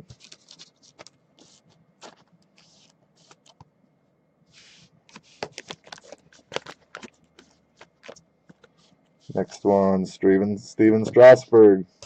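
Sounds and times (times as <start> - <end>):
trading cards rustling and clicking: 0.0 - 3.6, 4.6 - 9.6.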